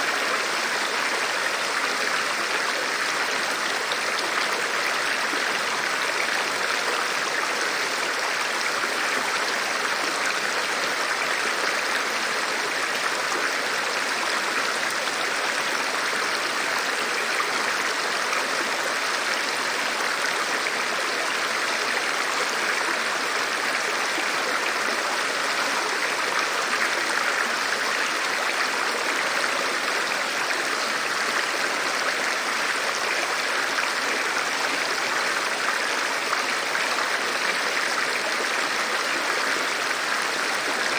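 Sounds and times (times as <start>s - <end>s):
rushing river water: 0.0s - 40.9s.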